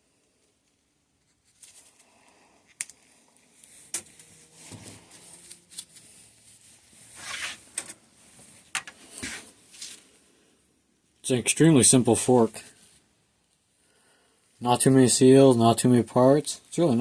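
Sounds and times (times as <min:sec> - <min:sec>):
rustling: 0:00.3 - 0:10.4.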